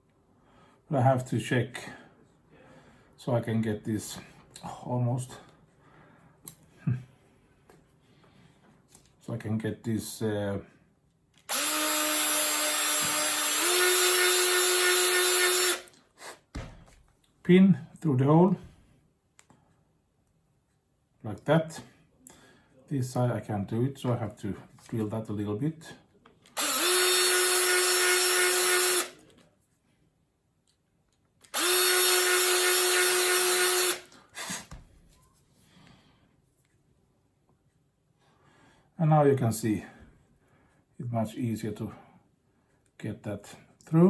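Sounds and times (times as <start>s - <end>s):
small drill running: 11.5s - 16.0s, 26.6s - 29.2s, 31.4s - 34.7s.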